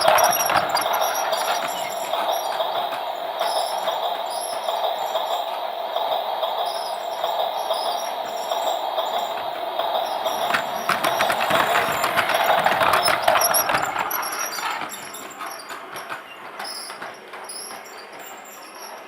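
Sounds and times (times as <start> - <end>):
toy train motor whirring: 0.0 - 2.6, 10.1 - 19.0.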